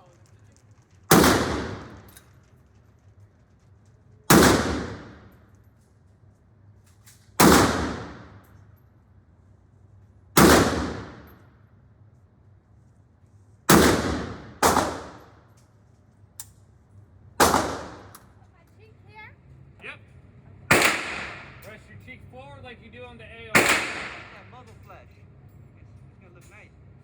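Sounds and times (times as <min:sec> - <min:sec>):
gunshots with echo: 0:01.1 - 0:02.1, 0:04.3 - 0:05.2, 0:07.4 - 0:08.4, 0:10.4 - 0:11.3, 0:13.7 - 0:15.3, 0:17.4 - 0:18.2, 0:20.7 - 0:21.6, 0:23.5 - 0:24.5.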